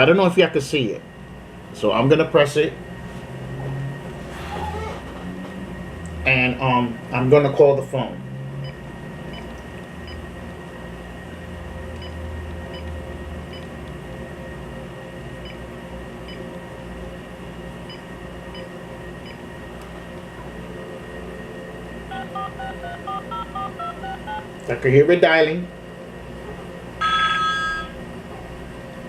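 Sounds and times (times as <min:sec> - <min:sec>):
low room hum: 0:00.0 - 0:29.0
touch-tone phone beeps: 0:22.1 - 0:24.4, 0:27.0 - 0:27.9.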